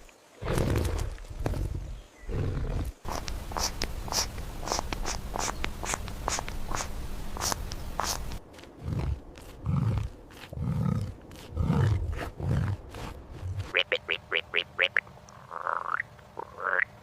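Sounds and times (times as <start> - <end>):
big cat growling: 8.8 - 13.7.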